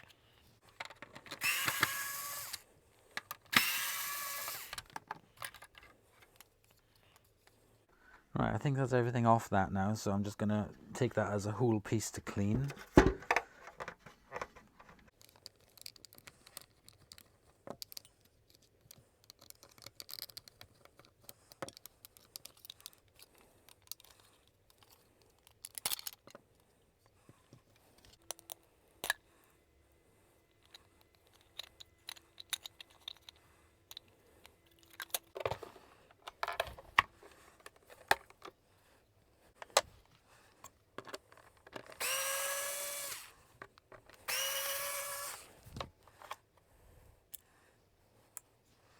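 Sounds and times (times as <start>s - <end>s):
plastic parts clicking and knocking: 0.0s - 7.6s, 12.3s - 29.3s, 30.5s - 38.6s, 39.6s - 46.6s
power driver whirring: 1.4s - 2.6s, 3.5s - 4.9s, 41.9s - 43.4s, 44.2s - 45.6s.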